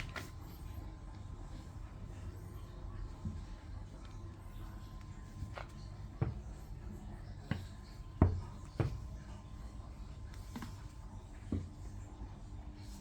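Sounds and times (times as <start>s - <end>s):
low steady hum: 0.0s - 13.0s
soft thumps and taps: 5.0s - 9.6s, 10.2s - 12.0s.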